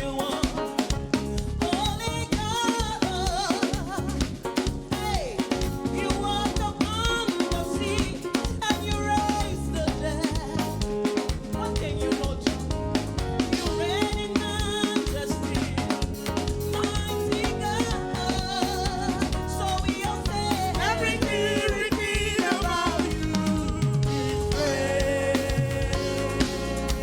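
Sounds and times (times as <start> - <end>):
band playing: 0.0 - 27.0
drum kit beat: 0.0 - 27.0
gospel singing: 0.0 - 27.0.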